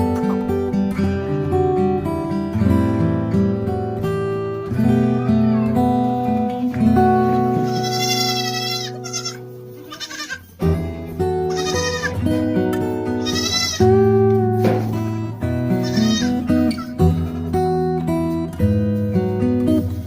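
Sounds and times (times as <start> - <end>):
acoustic guitar music: 0.0 - 20.0
goats bleating: 7.6 - 10.5, 11.4 - 12.3, 13.2 - 13.9, 15.8 - 17.0.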